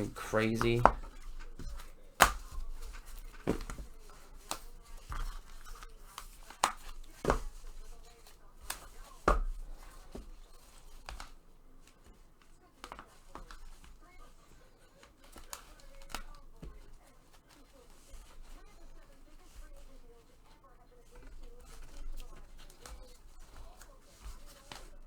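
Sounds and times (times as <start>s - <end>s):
cards tapping on table: 0.0s - 14.0s, 15.0s - 17.1s, 21.2s - 24.9s
rustling of cards and packaging: 0.0s - 25.0s.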